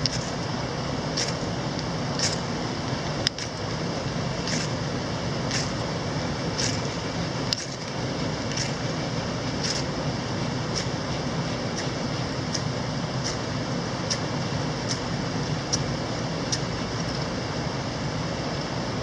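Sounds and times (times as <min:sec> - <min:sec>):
mountain stream rushing: 0:00.0 - 0:19.0.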